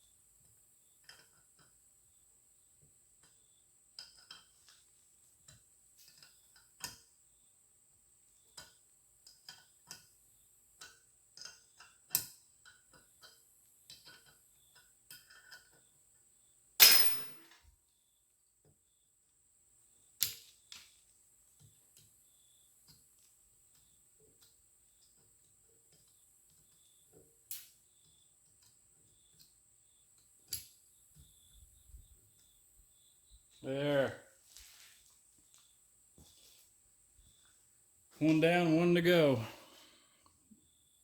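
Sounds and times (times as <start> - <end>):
sharp metal clatter: 16.8 - 17.5.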